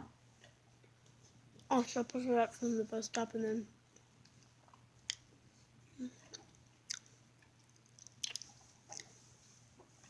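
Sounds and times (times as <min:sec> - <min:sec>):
person chewing sandwich: 0:06.2 - 0:09.2.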